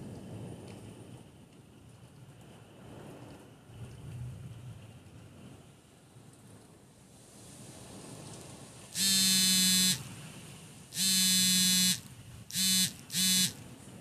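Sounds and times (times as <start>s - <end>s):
harsh electric buzz: 9.0s - 10.1s, 11.0s - 13.6s.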